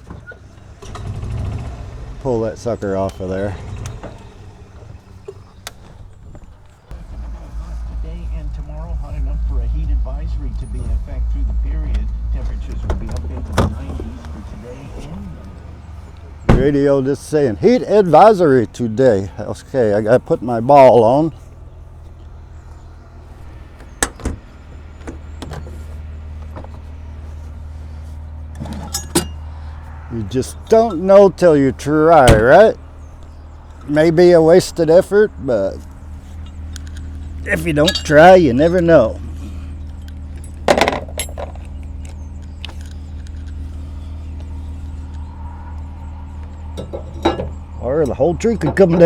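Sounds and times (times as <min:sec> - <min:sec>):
metal clanks and clicks: 0:00.0 - 0:09.5, 0:22.1 - 0:27.0, 0:28.4 - 0:29.6, 0:35.8 - 0:49.0
truck engine idling: 0:00.0 - 0:49.0
steady low hum: 0:01.6 - 0:49.0
loud clatter: 0:06.8 - 0:14.5, 0:40.0 - 0:43.6.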